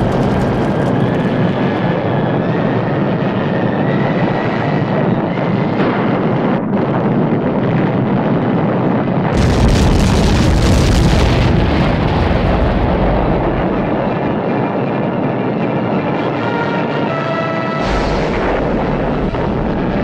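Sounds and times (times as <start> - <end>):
loud explosion blast: 0.0 - 2.0, 5.8 - 7.8, 9.2 - 14.4, 17.8 - 20.0
steady rumbling: 0.0 - 20.0.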